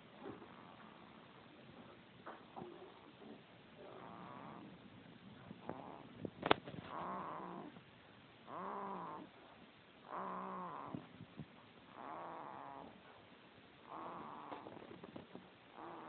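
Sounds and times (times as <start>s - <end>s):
long pitched snores: 3.8s - 4.7s, 8.5s - 9.3s, 10.1s - 11.1s, 11.9s - 13.0s, 13.9s - 14.7s, 15.8s - 16.0s.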